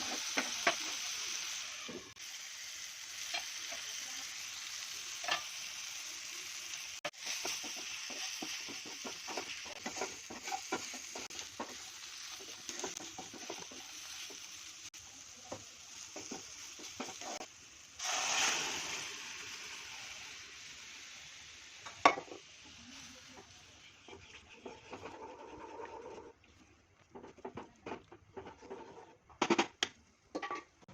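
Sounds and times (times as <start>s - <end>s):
spoon stirring and scraping a pan: 0.0s - 1.2s, 3.2s - 4.2s, 5.1s - 5.7s, 7.0s - 18.6s, 21.8s - 29.5s
food sizzling in a pan: 0.0s - 26.1s.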